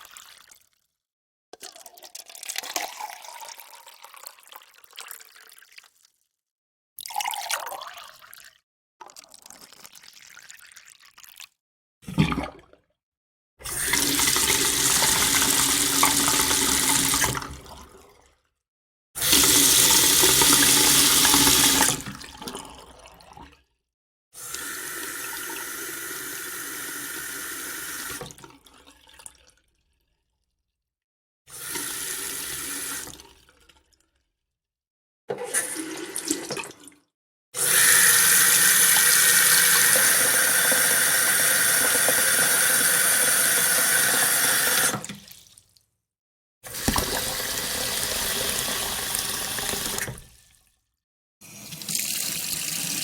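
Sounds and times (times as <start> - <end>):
running and pouring water: 13.7 - 17.7, 19.2 - 22.6, 46.7 - 50.4.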